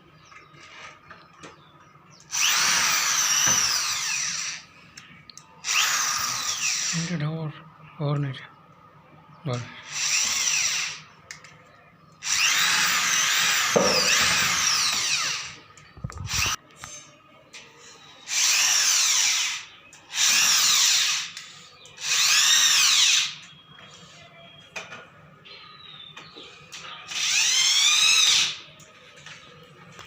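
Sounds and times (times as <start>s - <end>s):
power drill whining: 2.3s - 4.7s, 5.6s - 7.1s, 9.8s - 11.1s, 12.2s - 16.6s, 18.2s - 23.5s, 27.1s - 28.7s.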